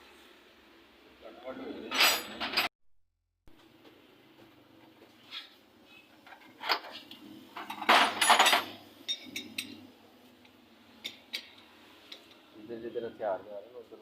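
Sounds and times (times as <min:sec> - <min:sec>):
metal tools clinking: 0:01.9 - 0:02.7, 0:07.6 - 0:09.8.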